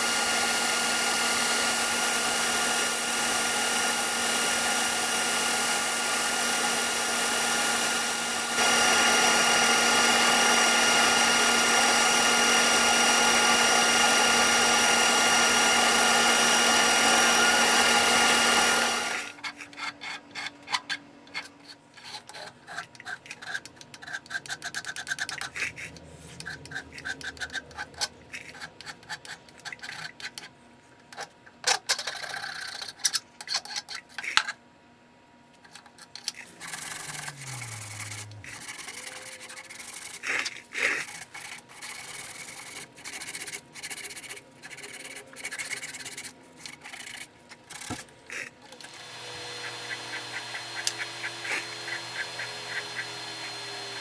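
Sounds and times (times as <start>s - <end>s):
power tool whining: 0.0s - 19.4s, 36.4s - 39.9s, 47.9s - 54.0s
hand filing and scraping: 18.9s - 30.5s, 35.7s - 54.0s.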